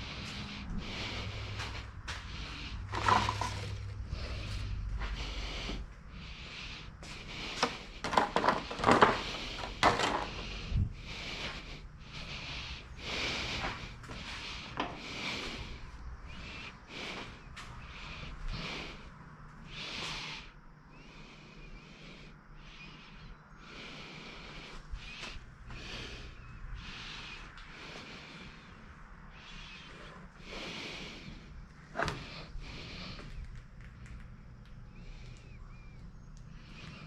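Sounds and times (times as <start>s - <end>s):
low hum: 0.0s - 8.1s.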